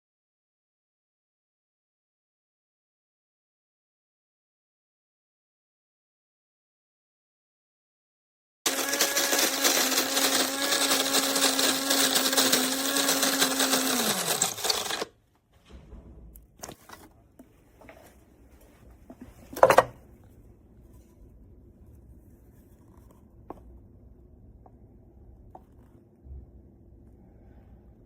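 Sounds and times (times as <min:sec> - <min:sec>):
coffee grinder running: 0:08.7 - 0:15.2.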